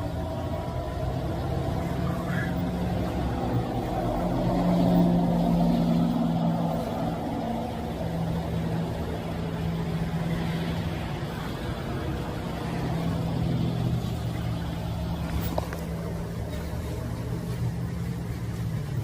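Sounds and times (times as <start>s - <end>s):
car engine running: 0.0s - 19.0s
road traffic noise: 0.0s - 19.0s.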